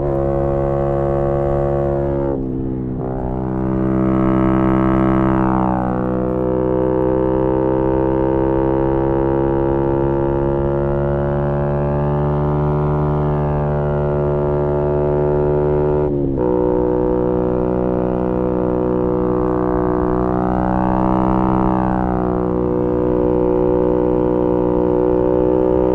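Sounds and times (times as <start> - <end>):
motorcycle engine while riding: 0.0 - 25.9.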